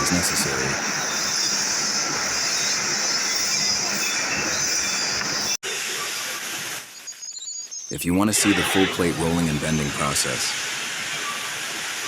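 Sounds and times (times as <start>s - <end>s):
hissing metal cutting: 0.0s - 5.6s.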